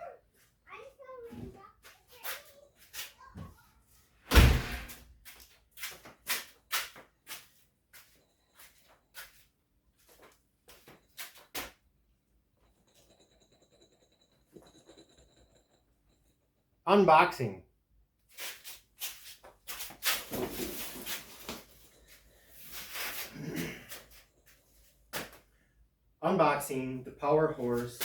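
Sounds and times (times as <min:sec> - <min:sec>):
loud thump: 0:04.3 - 0:05.0.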